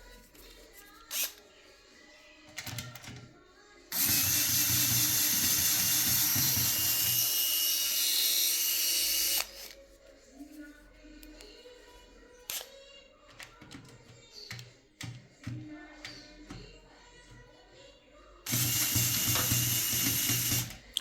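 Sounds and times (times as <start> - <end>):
electric screwdriver running: 1.1 - 1.3, 3.9 - 9.8, 18.5 - 20.7.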